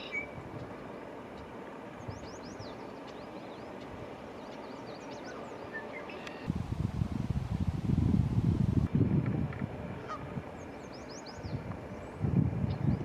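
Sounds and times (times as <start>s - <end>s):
strong wind gusts buffeting microphone: 6.5s - 13.0s.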